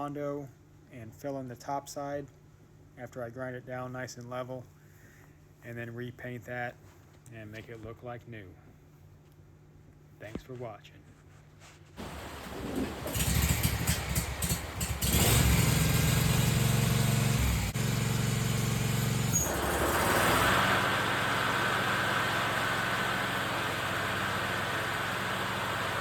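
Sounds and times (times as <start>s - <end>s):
lawn mower engine running: 12.0s - 26.0s
mower blades rushing whine: 12.0s - 26.0s.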